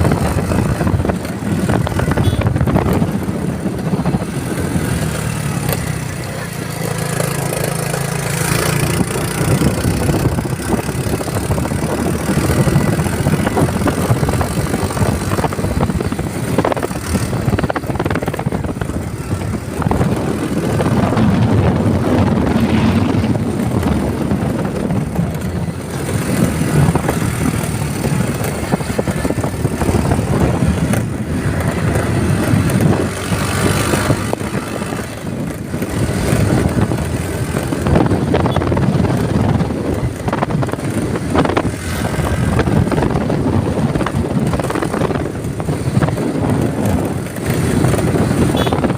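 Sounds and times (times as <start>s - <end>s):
vehicle engine and road noise: 0.0s - 48.9s.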